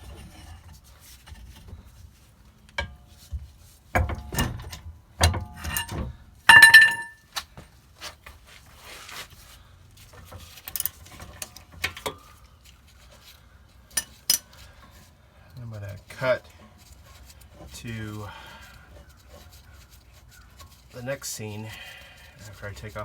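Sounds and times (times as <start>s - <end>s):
metal tools clinking and knocking: 4.0s - 7.2s
loud ringing metal clang: 6.5s - 7.2s.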